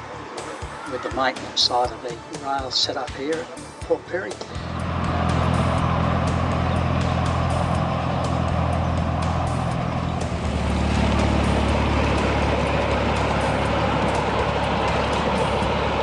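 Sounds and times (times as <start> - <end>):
miniature locomotive engine running: 4.7 - 16.0.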